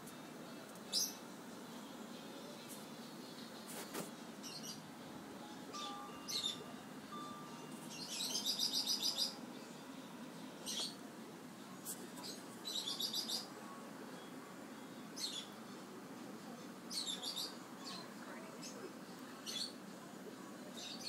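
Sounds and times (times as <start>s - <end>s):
pet bird chirping: 5.7s - 9.4s, 12.2s - 13.5s, 16.9s - 18.8s.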